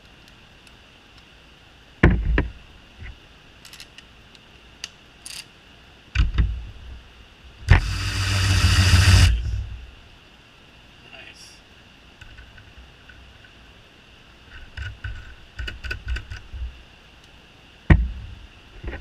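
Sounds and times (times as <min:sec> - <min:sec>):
cordless ratchet motor whirring: 0:07.7 - 0:09.6.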